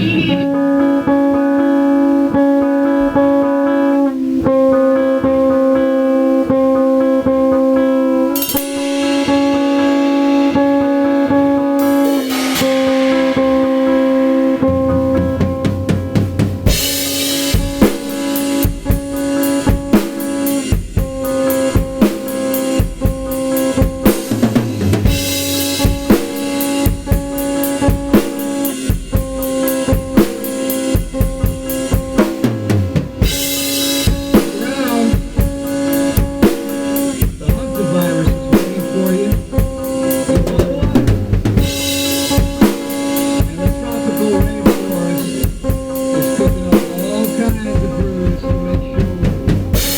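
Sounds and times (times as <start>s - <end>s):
drum kit playing: 0.0s - 49.9s
looped guitar riff: 0.0s - 49.9s
cymbal crash: 8.4s - 32.4s.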